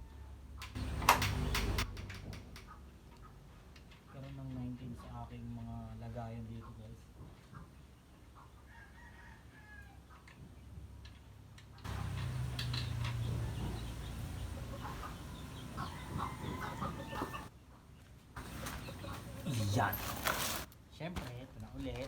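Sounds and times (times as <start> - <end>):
light clicks: 11.8 - 16.0
chickens clucking: 11.9 - 20.2.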